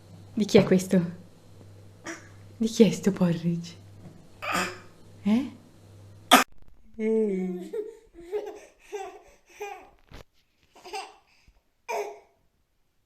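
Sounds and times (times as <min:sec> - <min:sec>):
baby vocalizing: 0:02.0 - 0:02.4, 0:04.4 - 0:04.9, 0:07.6 - 0:10.0, 0:11.9 - 0:12.3
baby laughing: 0:07.6 - 0:09.9, 0:10.8 - 0:11.3, 0:11.9 - 0:12.3.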